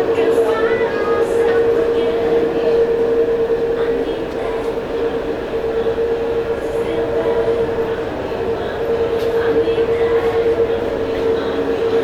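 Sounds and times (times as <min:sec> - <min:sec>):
faint voices: 0:00.0 - 0:12.0
machinery hum with steady tone: 0:00.0 - 0:12.0.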